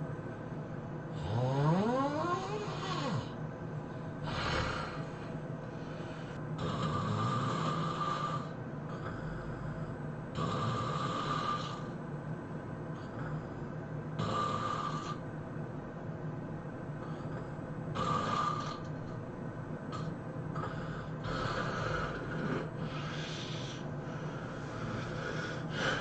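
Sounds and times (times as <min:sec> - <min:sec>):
person snoring heavily: 0:01.1 - 0:03.4, 0:04.2 - 0:12.0, 0:14.2 - 0:15.2, 0:17.0 - 0:18.9, 0:19.9 - 0:26.0.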